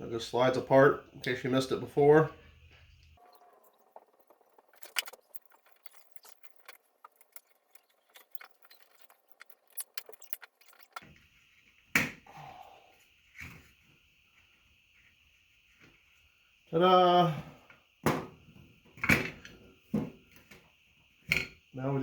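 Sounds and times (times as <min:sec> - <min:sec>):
metal housing clicking and rattling: 0:03.2 - 0:11.0.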